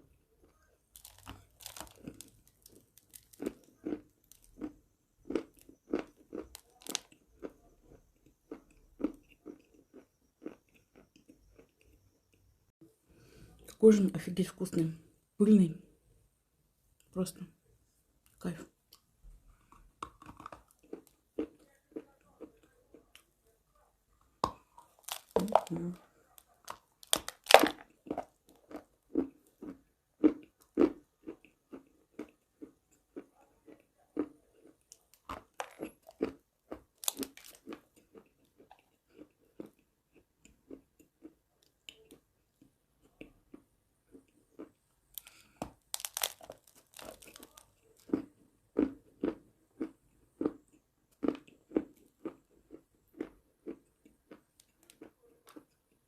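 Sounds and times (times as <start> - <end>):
crunchy chewing of chalk: 0.0 - 12.5, 18.2 - 56.0.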